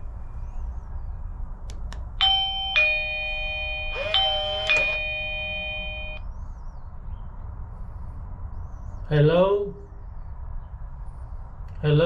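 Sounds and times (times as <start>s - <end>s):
two-note doorbell chime: 2.2s - 6.2s.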